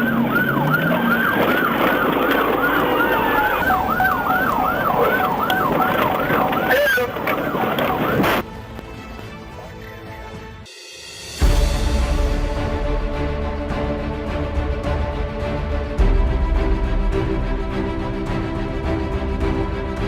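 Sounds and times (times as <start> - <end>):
police siren yelping: 0.0 - 8.4.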